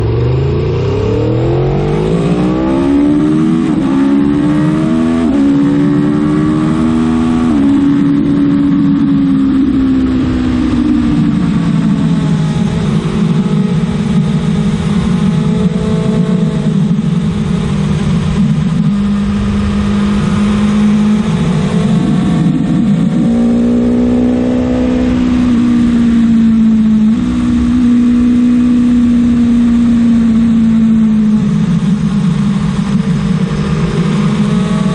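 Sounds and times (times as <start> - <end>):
motorcycle engine accelerating hard: 0.0 - 34.9.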